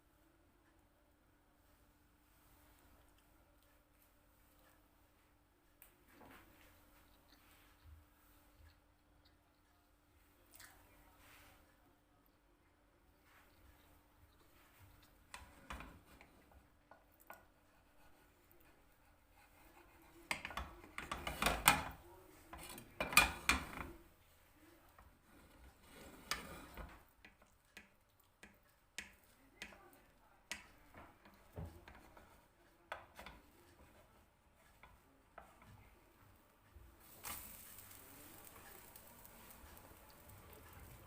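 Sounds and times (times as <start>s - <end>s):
dishes and cutlery clinking: 20.3s - 24.0s.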